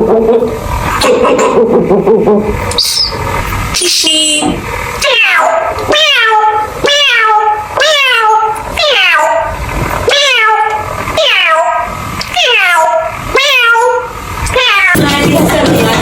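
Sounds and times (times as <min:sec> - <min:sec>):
cat meowing: 0:05.0 - 0:15.0.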